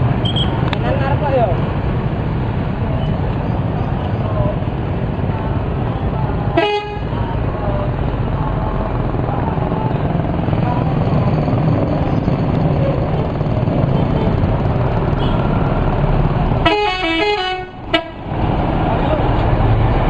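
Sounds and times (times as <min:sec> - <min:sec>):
bus engines rumbling: 0:00.0 - 0:20.0
multi-tone musical bus horn: 0:06.6 - 0:07.1, 0:16.6 - 0:18.3.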